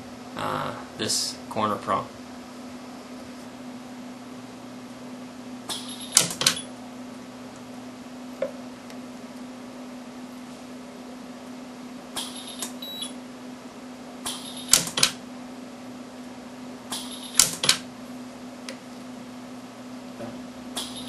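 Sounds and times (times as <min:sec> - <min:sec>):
steady low hum: 0:00.0 - 0:21.0
welder electric snaps: 0:05.7 - 0:06.7, 0:14.2 - 0:15.2, 0:16.9 - 0:17.9.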